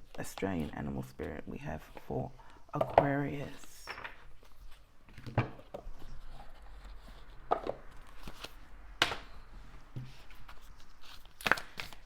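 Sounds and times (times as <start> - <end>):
cards being shuffled: 5.6 - 9.2, 10.0 - 12.0.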